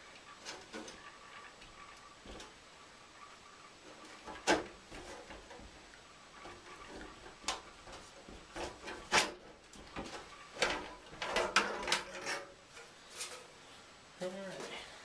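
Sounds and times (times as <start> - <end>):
metal case knocking and scraping: 6.4 - 12.6.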